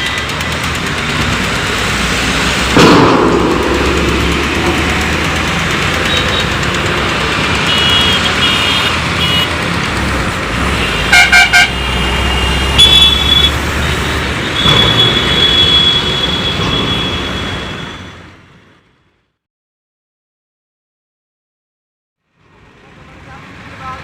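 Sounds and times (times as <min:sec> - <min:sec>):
excavator diesel engine running: 0:00.0 - 0:17.1
vehicle horn blasts: 0:07.6 - 0:09.5, 0:10.8 - 0:13.6.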